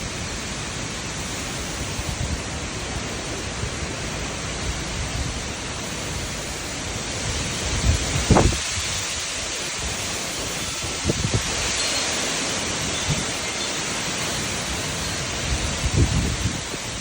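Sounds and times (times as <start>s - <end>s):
storm wind and rain hissing: 0.0s - 17.0s
wind gusts buffeting microphone: 0.0s - 17.0s.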